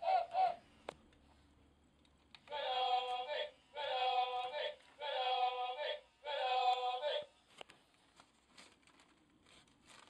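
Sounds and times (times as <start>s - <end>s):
crowd singing football chant: 2.5s - 7.3s.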